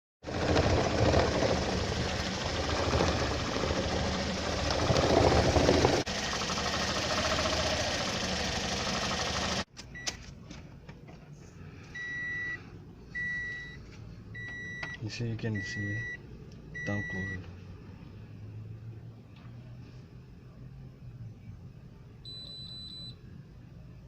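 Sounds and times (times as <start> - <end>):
engine running rough: 0.2 - 9.7
short electronic beeps: 22.3 - 23.2.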